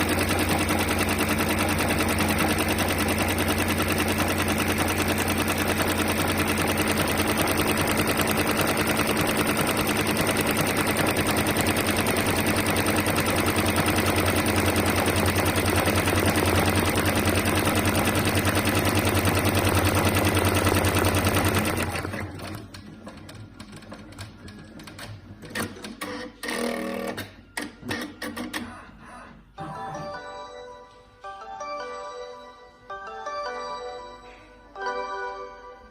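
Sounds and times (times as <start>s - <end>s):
sewing machine stitching: 0.0s - 28.7s.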